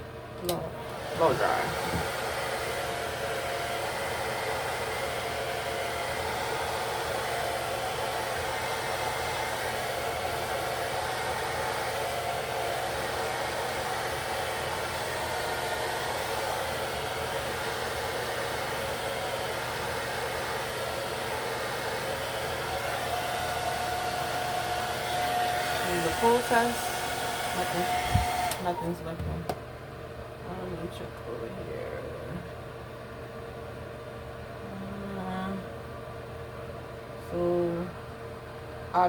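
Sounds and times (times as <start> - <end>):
hair dryer blowing: 0.0 - 29.6.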